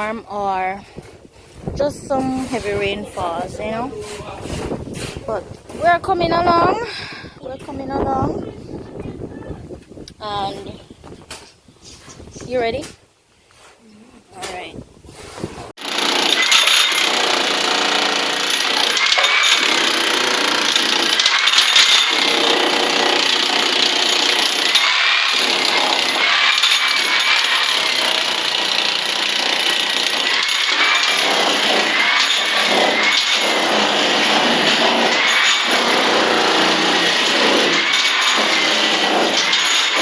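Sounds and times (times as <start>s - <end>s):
electric power tool running: 15.8s - 40.0s.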